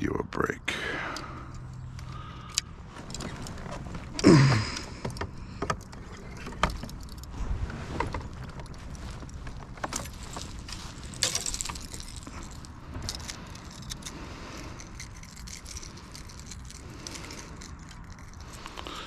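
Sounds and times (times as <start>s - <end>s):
fishing gear clicking and rattling: 1.0s - 19.0s
gear clattering: 1.2s - 19.0s.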